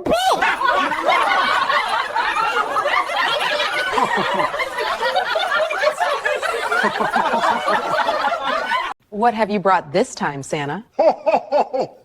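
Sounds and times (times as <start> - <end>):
people laughing: 0.1 - 9.0.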